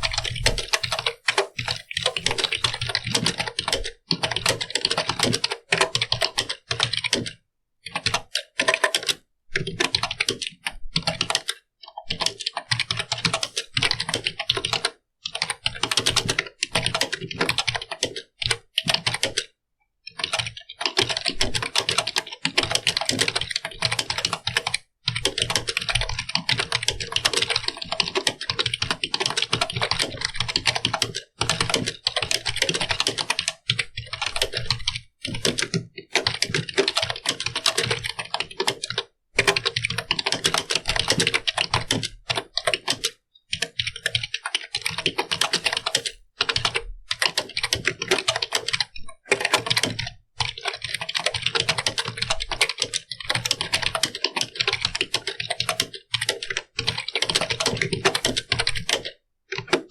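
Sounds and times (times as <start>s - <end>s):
computer keyboard typing: 0.0s - 59.9s.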